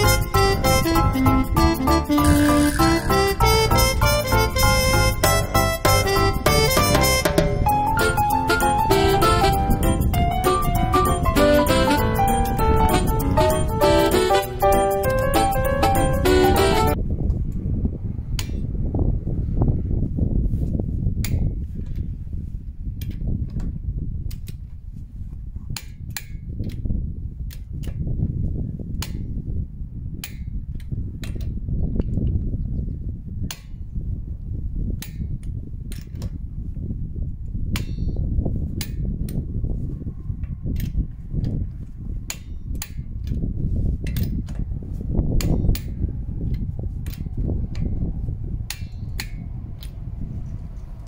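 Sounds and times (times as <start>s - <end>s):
low rumble: 46.0s - 51.0s.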